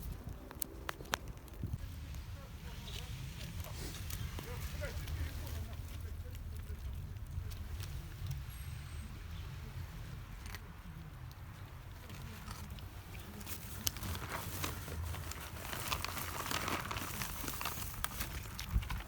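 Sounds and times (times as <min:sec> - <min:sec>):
wind on microphone: 0:00.0 - 0:02.3, 0:18.5 - 0:19.0
crinkly crunching sounds: 0:00.0 - 0:19.0.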